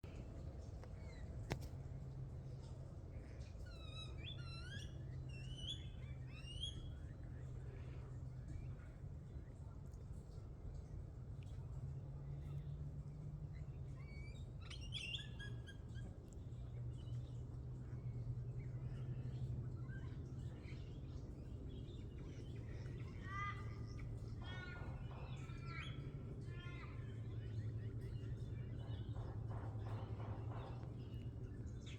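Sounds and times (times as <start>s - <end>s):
low background rumble: 0.0s - 31.9s.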